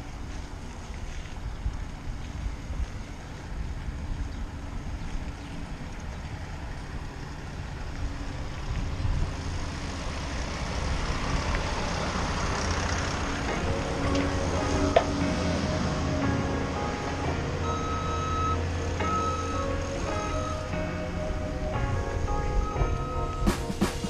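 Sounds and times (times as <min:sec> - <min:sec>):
wind rumbling on microphone: 0:00.0 - 0:16.8
traffic noise: 0:00.0 - 0:24.0.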